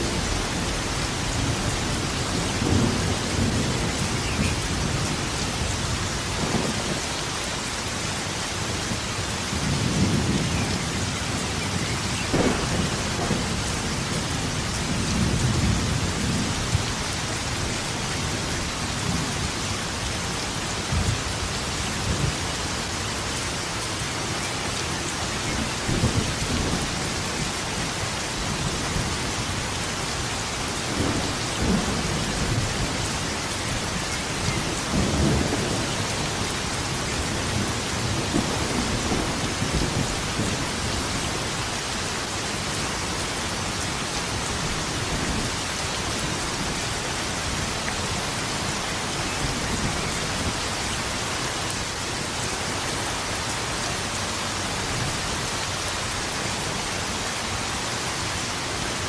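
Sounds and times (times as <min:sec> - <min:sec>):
heavy rain: 0:00.0 - 0:59.0
thunder rumbling: 0:00.1 - 0:07.1, 0:09.5 - 0:19.5, 0:30.8 - 0:41.6.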